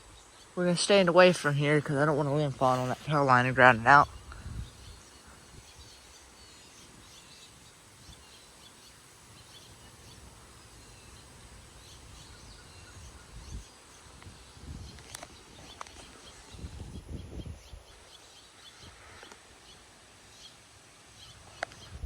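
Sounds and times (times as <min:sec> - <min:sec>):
faint bird chirps: 0:01.9 - 0:22.0
gusting wind roar: 0:02.1 - 0:08.3, 0:11.5 - 0:17.9.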